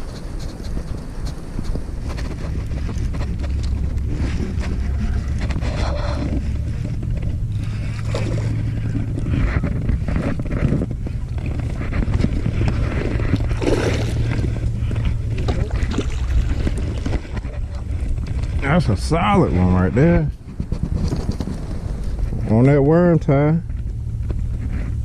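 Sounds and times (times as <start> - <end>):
faint knocks and rustles: 0.0 - 13.6
steady low hum: 0.0 - 25.0
wind buffeting microphone: 0.0 - 25.0.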